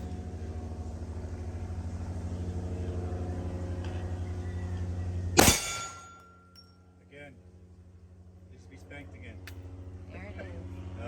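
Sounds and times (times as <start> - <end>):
low mechanical hum: 0.0 - 11.0
loud pistol shot: 5.4 - 6.2.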